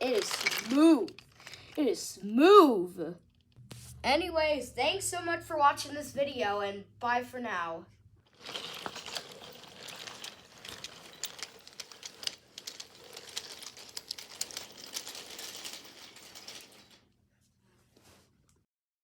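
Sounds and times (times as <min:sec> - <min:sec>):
small hard objects clicking and rattling: 0:00.0 - 0:01.9, 0:08.3 - 0:17.0.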